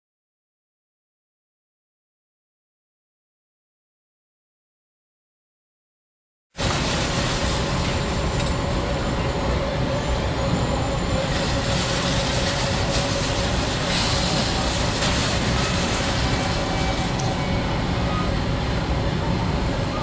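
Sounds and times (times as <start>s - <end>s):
machinery rumble with whine: 6.6s - 20.0s.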